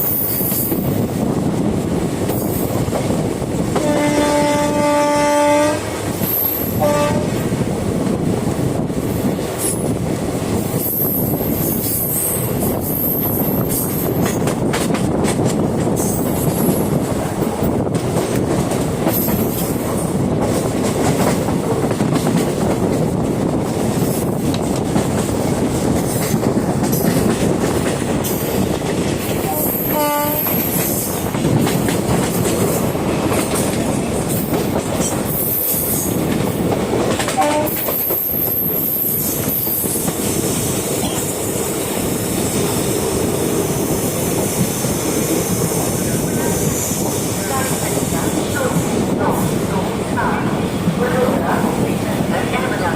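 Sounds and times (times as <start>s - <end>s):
train rumbling on track: 0.0s - 52.9s
train horn: 3.8s - 6.0s, 6.7s - 7.4s, 29.4s - 30.9s, 37.3s - 38.0s.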